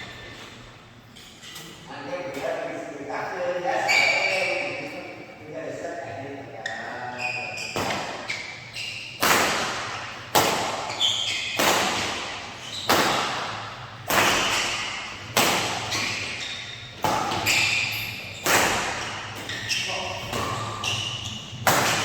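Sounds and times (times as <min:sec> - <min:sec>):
shoes squeaking on court: 0:00.0 - 0:02.6, 0:03.7 - 0:05.2, 0:06.6 - 0:22.0
rackets hitting shuttlecock: 0:07.6 - 0:08.5, 0:09.2 - 0:22.0.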